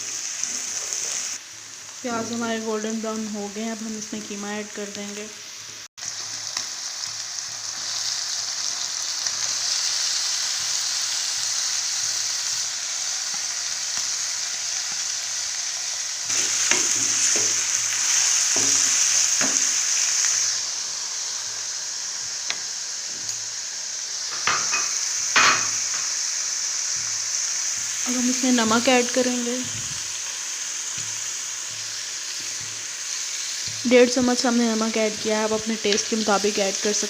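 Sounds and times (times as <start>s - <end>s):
meat sizzling in oil: 0.0s - 37.0s
spoon scraping a pan: 16.3s - 20.4s, 24.3s - 26.2s.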